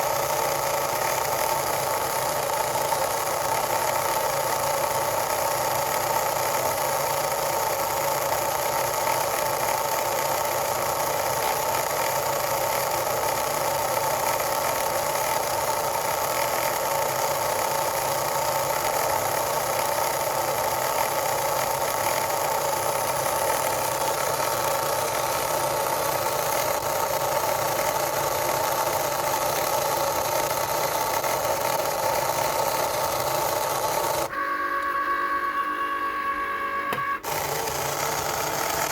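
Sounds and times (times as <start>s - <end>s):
cutting machine grinding: 0.0s - 38.9s
motor whine: 19.4s - 38.9s.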